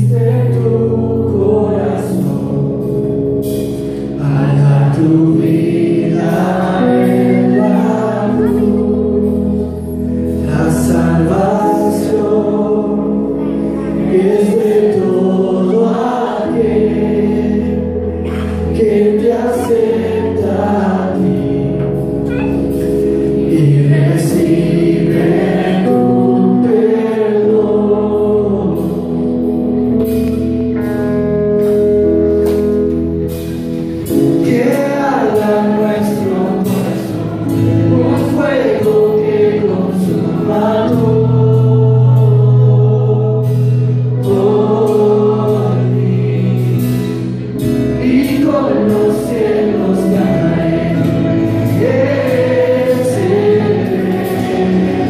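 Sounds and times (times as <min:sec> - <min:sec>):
group singing worship song: 0:00.0 - 0:30.6, 0:32.6 - 0:55.0
band with bass and beat: 0:00.0 - 0:55.0.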